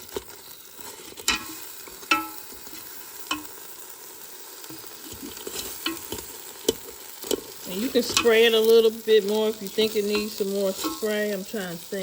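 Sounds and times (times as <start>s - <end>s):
fish sizzling in air fryer: 0.0s - 12.0s
light utensil clicks: 3.3s - 3.6s.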